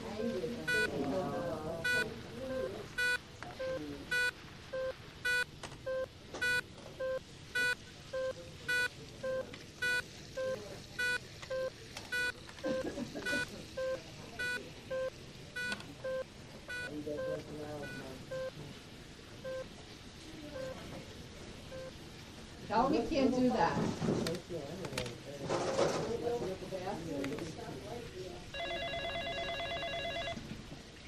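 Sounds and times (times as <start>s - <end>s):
faint voices murmuring: 0.0s - 5.1s, 5.9s - 28.6s
high electronic beep: 0.2s - 12.8s
softer lower beep: 0.2s - 12.8s.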